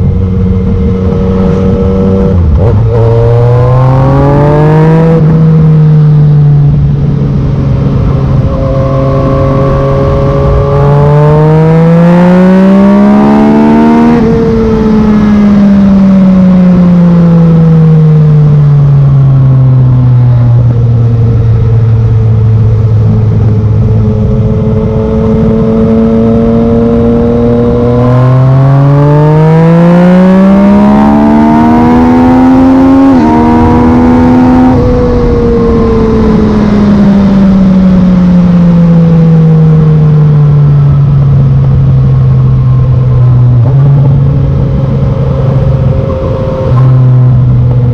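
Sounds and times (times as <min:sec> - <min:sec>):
low wind rumble: 0:00.0 - 0:47.9
motorcycle engine revving: 0:00.0 - 0:47.9.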